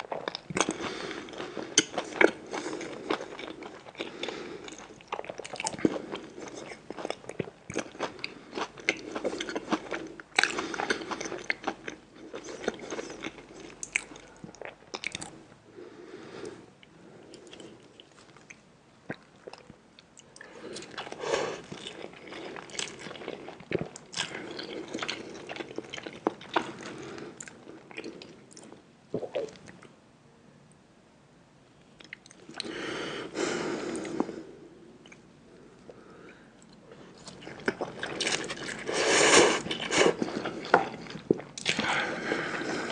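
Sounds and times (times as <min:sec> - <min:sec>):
person chewing crunchy food: 0:00.0 - 0:15.4, 0:17.3 - 0:29.8, 0:36.6 - 0:42.9.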